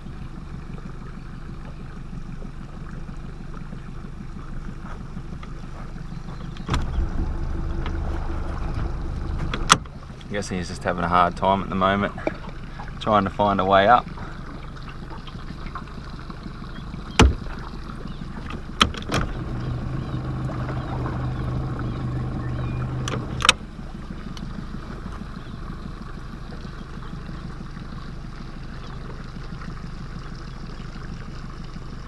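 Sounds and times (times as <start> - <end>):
electric trolling motor humming: 0.0 - 32.0
knocks against boat hull: 17.1 - 17.7.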